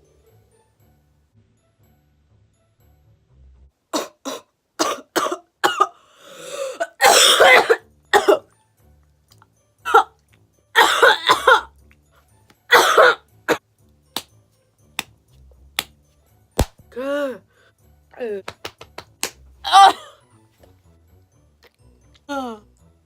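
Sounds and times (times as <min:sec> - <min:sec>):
woman coughing: 0:04.0 - 0:06.0, 0:06.6 - 0:08.5, 0:09.9 - 0:10.2, 0:10.8 - 0:11.7, 0:12.7 - 0:13.6, 0:19.7 - 0:20.2
rasping breath: 0:06.0 - 0:06.9.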